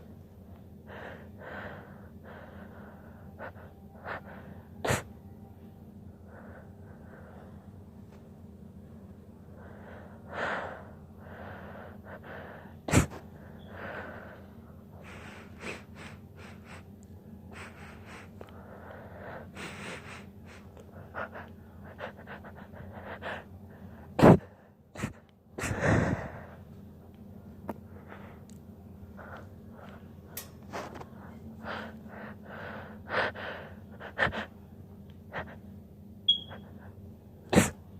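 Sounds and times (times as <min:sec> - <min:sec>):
woman gasping wheezy breaths: 0:24.2 - 0:26.6
woman stifling sneezes: 0:37.6 - 0:37.8.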